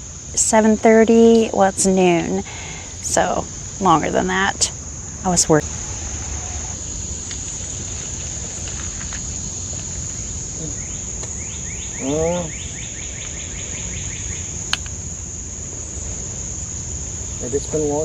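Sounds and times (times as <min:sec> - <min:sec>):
low outdoor rumble: 0:00.0 - 0:12.8
insects shrilling: 0:00.0 - 0:18.0
rising chirps: 0:02.6 - 0:08.6.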